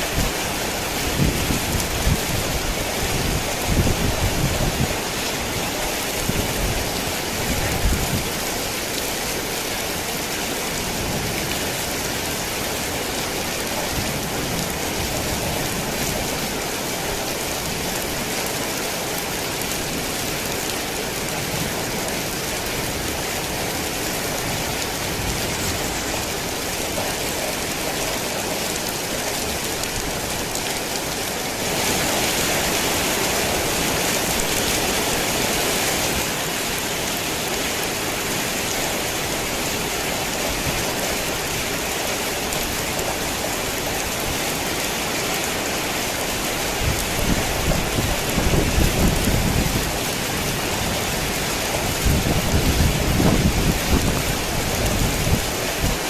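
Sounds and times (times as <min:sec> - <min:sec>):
heavy rain hissing: 0:00.0 - 0:56.0.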